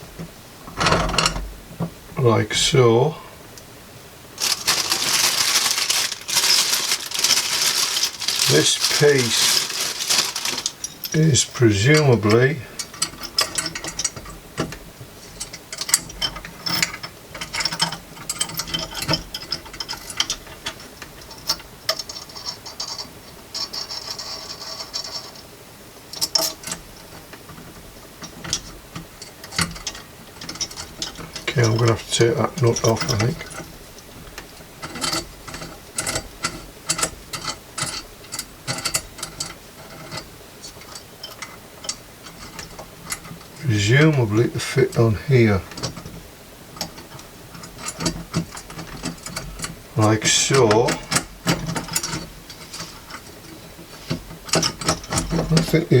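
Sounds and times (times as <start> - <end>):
metal parts clicking and clinking: 4.4 - 11.2.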